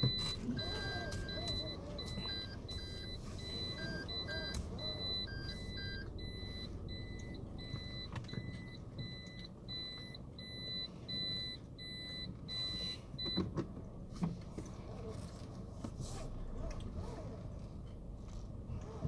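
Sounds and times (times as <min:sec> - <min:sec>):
car warning beeps: 0:00.0 - 0:13.8
low engine rumble: 0:00.0 - 0:19.0.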